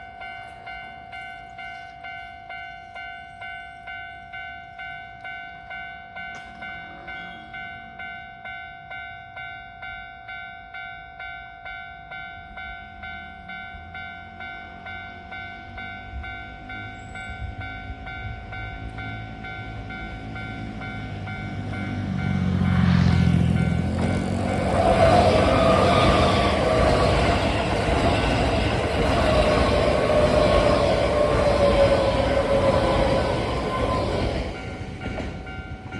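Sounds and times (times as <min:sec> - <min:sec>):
train rumble: 0:12.2 - 0:35.9.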